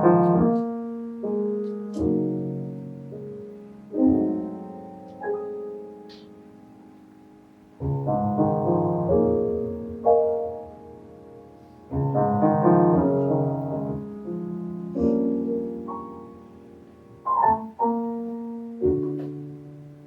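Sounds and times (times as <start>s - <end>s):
piano playing slow chords: 0.0s - 20.0s.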